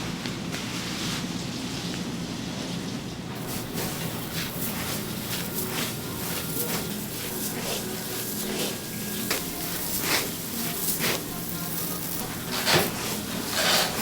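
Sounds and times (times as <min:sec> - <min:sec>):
steady background hum: 0:00.0 - 0:14.0
utensils knocking and scraping: 0:03.4 - 0:14.0.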